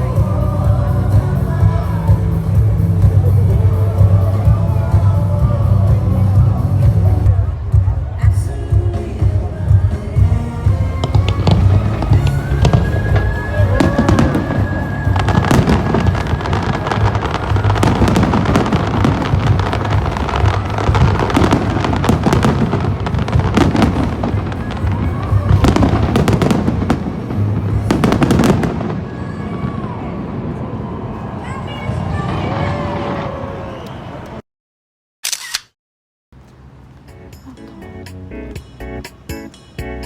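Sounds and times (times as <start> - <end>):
music playing: 0.0 - 28.9, 36.8 - 40.0
fireworks bursting and crackling: 8.8 - 30.9.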